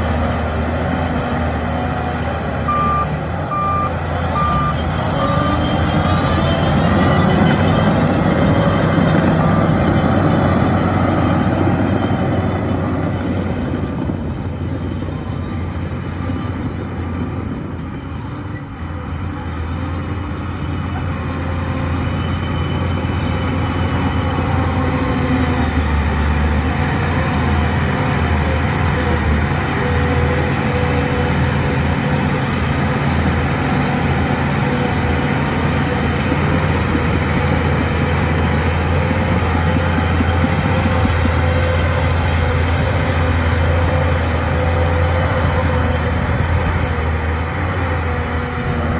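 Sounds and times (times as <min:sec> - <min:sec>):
bulldozer diesel engine droning: 0:00.0 - 0:48.9.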